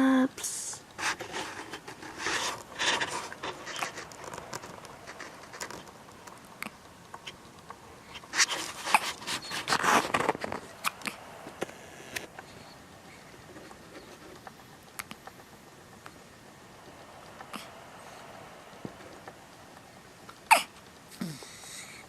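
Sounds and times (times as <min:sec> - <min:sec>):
person hiccuping: 0:20.5 - 0:21.5.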